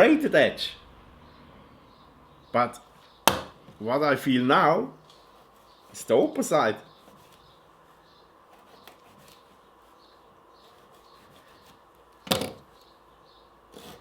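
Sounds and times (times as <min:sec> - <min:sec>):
knife scraping rope: 0:08.6 - 0:09.6, 0:10.6 - 0:11.8, 0:13.7 - 0:14.0
knife sawing rope: 0:10.7 - 0:11.8, 0:13.8 - 0:14.0.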